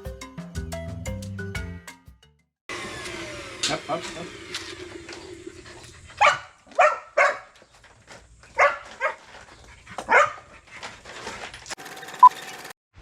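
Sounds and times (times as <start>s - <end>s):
dog barking: 6.2s - 7.5s, 8.6s - 9.2s, 10.1s - 10.5s.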